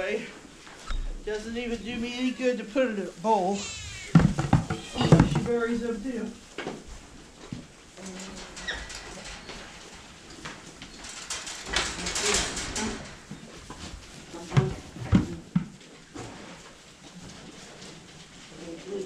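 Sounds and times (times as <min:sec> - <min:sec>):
rustling: 0:00.0 - 0:19.0
dull knocks: 0:04.1 - 0:05.6.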